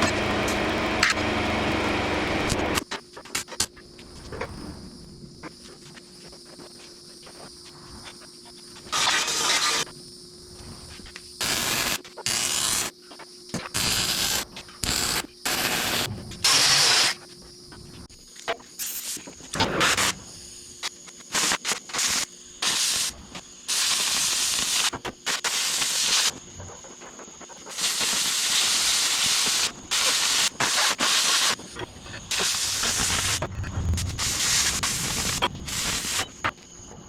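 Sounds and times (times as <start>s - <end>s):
arc welding hiss: 8.9s - 9.9s, 11.4s - 12.9s, 13.6s - 17.2s, 18.8s - 36.8s.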